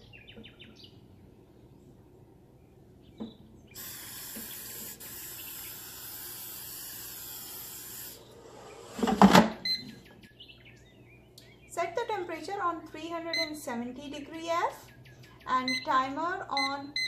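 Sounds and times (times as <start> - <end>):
steady spray hiss: 3.7 - 9.1.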